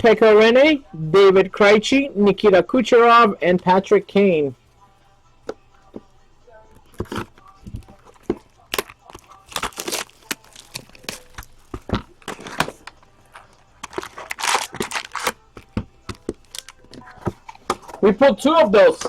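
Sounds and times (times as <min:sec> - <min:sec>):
cards being handled: 0:06.8 - 0:18.1
card pack wrapper crinkling and tearing: 0:08.6 - 0:17.6.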